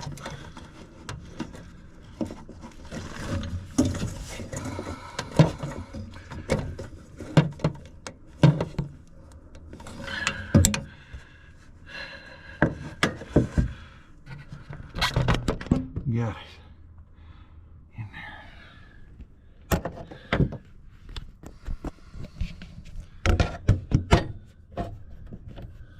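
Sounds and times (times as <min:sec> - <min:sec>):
knocks and scraping in furnace: 0:00.0 - 0:11.3, 0:12.5 - 0:16.2, 0:21.5 - 0:25.9.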